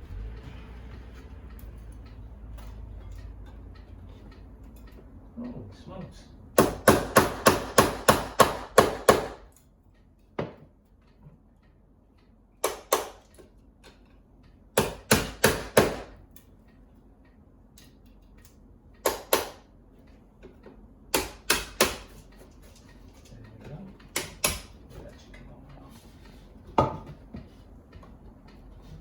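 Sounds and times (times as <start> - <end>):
hammer tapping on wood: 6.6 - 9.4, 10.4 - 10.7, 12.6 - 13.5, 14.8 - 16.2, 19.0 - 19.6, 20.6 - 22.2, 24.0 - 24.8, 26.7 - 28.2.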